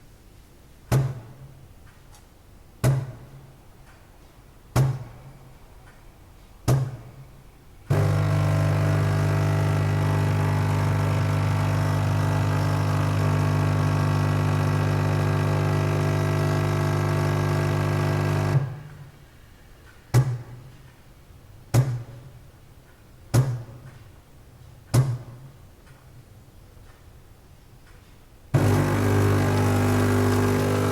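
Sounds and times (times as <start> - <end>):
coffee machine motor hum: 7.9 - 19.2, 28.6 - 30.9
coffee machine thunks: 28.6 - 30.9.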